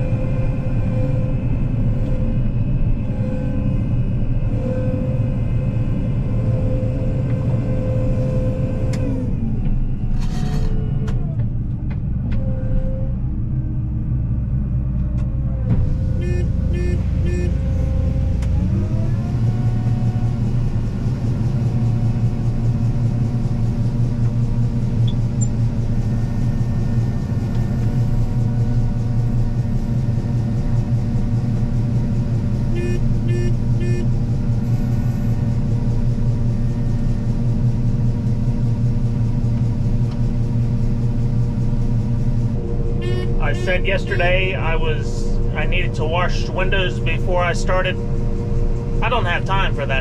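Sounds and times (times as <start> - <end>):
combine harvester engine: 0.0 - 50.0
short beeps: 16.2 - 17.6, 43.0 - 43.7.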